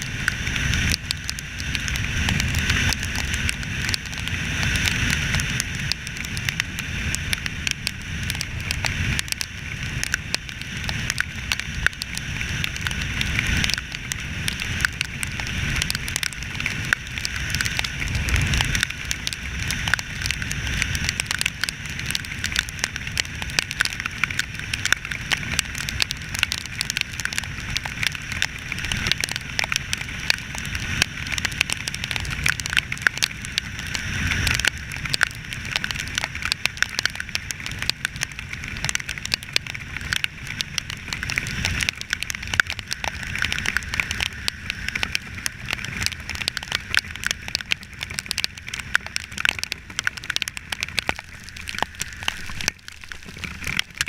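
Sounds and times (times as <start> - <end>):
raindrops crackling: 0.0 - 54.0
low rumble: 12.7 - 21.4.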